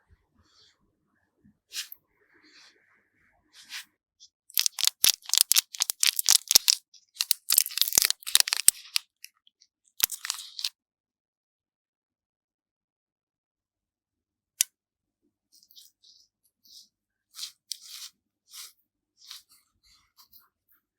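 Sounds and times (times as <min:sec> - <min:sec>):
crisp crunching clicks: 0:04.5 - 0:09.3, 0:10.0 - 0:10.7.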